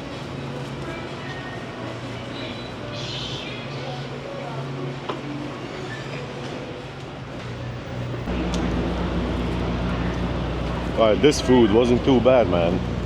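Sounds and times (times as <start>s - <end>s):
diesel truck engine idling: 8.3s - 13.0s.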